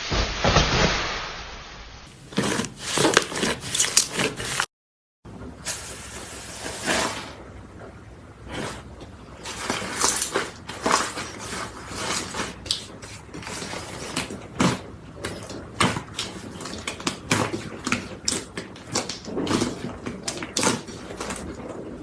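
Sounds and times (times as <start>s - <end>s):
slime crackling and popping: 9.5s - 21.9s.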